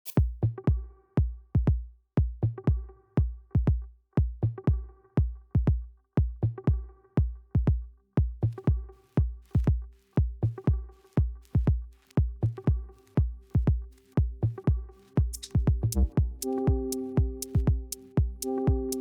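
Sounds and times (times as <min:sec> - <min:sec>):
electronic music with drum-machine beat: 0:07.2 - 0:19.0
deep kick drums dropping in pitch: 0:13.2 - 0:19.0.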